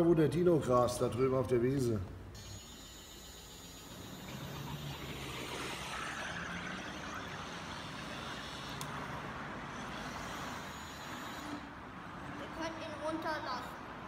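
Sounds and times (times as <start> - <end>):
toy truck motor whirring: 2.4 - 12.7.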